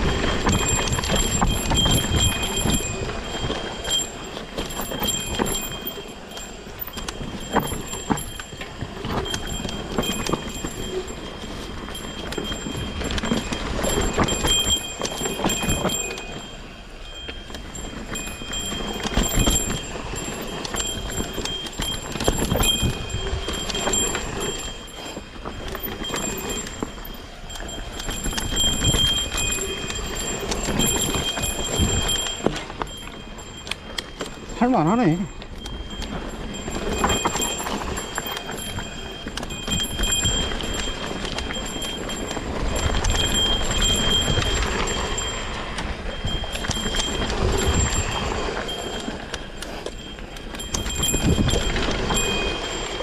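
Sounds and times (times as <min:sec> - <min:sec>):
mountain bike rattling over rocks: 0:00.0 - 0:53.0.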